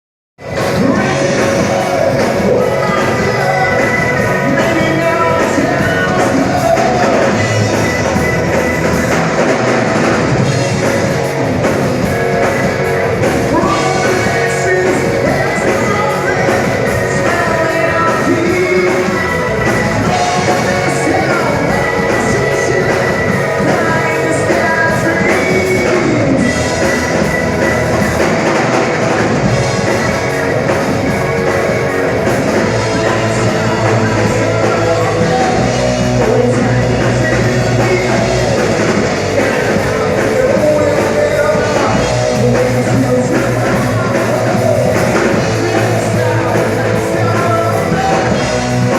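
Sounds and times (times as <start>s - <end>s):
person singing: 0.4s - 9.6s, 12.1s - 28.6s, 29.7s - 48.9s
drums: 0.4s - 48.9s
rock band playing live: 0.4s - 48.9s.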